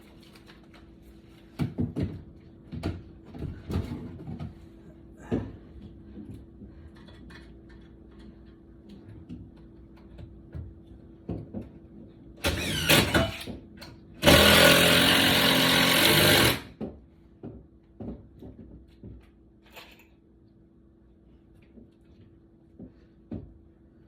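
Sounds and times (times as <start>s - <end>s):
power tool running: 14.2s - 16.7s.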